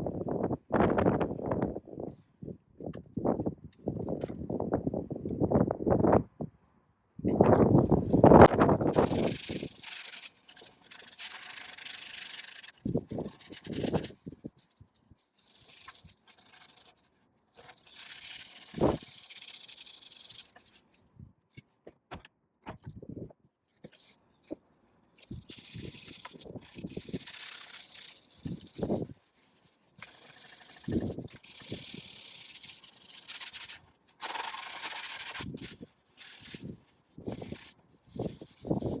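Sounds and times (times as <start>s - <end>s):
hand sanding metal panel: 8.9s - 14.4s, 15.4s - 20.8s, 25.2s - 39.0s.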